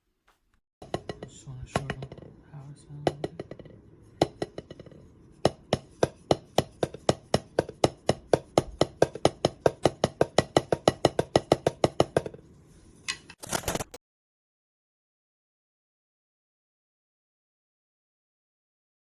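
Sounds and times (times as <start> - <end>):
drumsticks tapping practice pad: 3.0 - 12.3.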